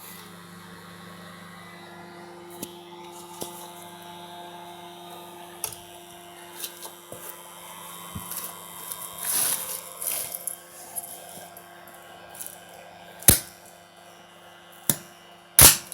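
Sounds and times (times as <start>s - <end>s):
welder transformers humming: 0.0s - 15.9s
welding arc crackling hiss: 5.6s - 11.6s, 14.8s - 15.9s.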